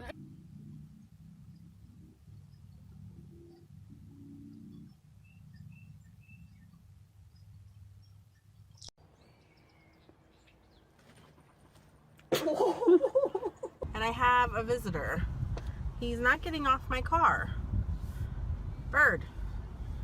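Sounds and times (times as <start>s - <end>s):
vehicle rumbling: 0.0s - 20.0s
bird chirps: 1.5s - 11.4s.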